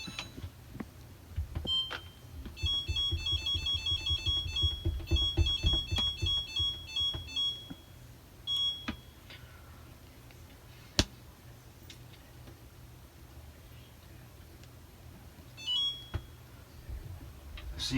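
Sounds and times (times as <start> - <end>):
dishwasher beeping tune: 0.0 - 0.5, 1.7 - 7.9, 8.5 - 9.1, 15.6 - 16.4.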